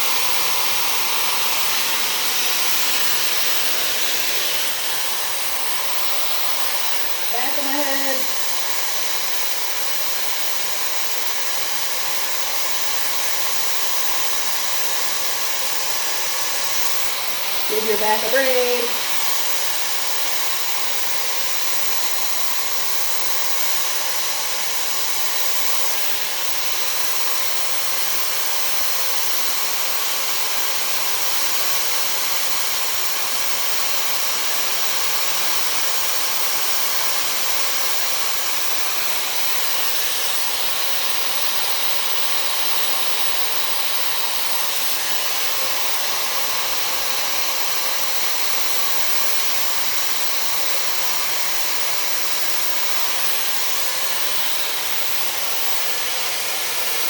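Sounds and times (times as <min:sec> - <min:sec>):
hair dryer running: 0:00.0 - 0:57.0.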